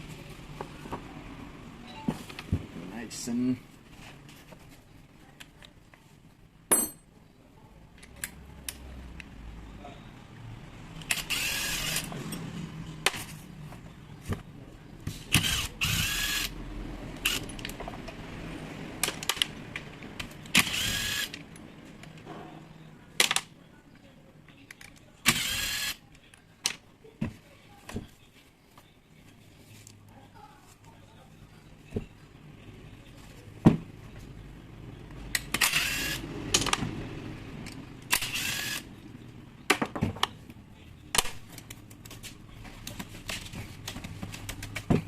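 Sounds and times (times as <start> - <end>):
small electric motor bursts: 11.2 - 12.1, 20.6 - 21.3, 35.7 - 36.2, 38.2 - 38.8.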